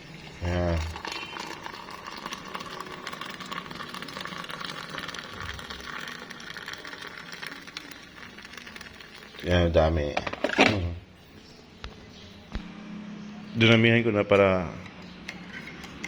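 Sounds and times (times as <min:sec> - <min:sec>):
water pouring into a glass: 0:00.0 - 0:10.3.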